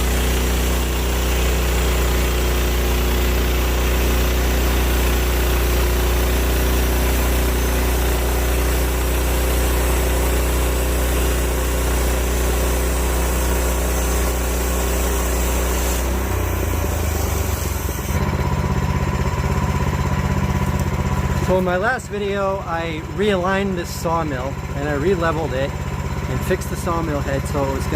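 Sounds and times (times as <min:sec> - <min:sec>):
small gas engine running: 0:00.0 - 0:27.9.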